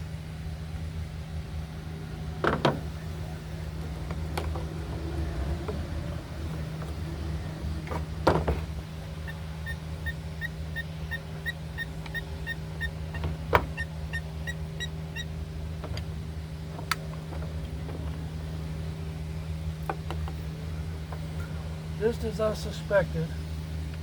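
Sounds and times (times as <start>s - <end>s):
steady low hum: 0.0s - 24.0s
sharp knocks: 7.9s - 8.8s.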